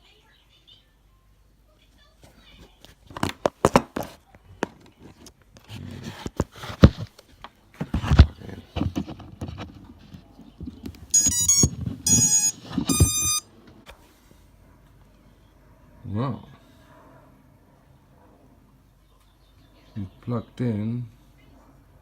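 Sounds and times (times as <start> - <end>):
drone motor startup beeps: 11.1 - 13.4.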